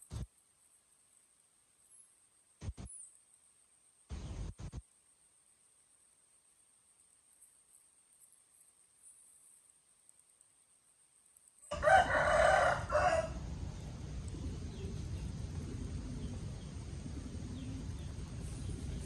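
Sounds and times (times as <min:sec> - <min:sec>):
rooster crowing: 0:11.7 - 0:13.5
low background rumble: 0:12.6 - 0:19.0.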